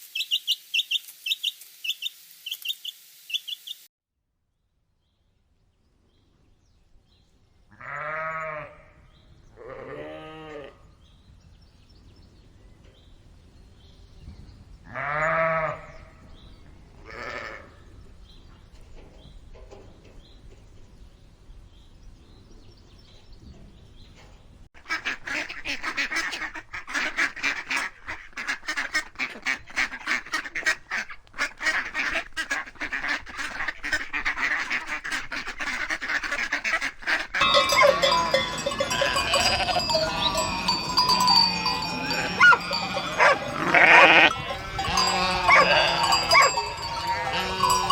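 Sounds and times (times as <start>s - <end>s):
farm animal calls: 7.7s - 10.9s, 14.9s - 18.2s, 24.2s - 47.9s
chatter of many animals: 23.5s - 47.9s.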